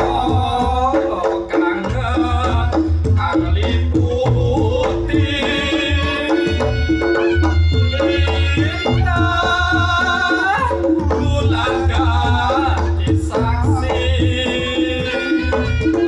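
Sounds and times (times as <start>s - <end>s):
heavy bass: 0.0s - 16.0s
kendang drums beating: 0.0s - 16.0s.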